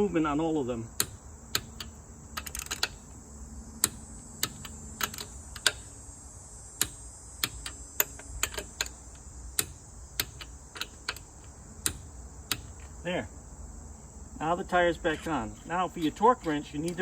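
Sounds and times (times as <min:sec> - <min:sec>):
torque wrench clicking: 0:01.0 - 0:03.2, 0:03.8 - 0:06.0, 0:06.8 - 0:13.0.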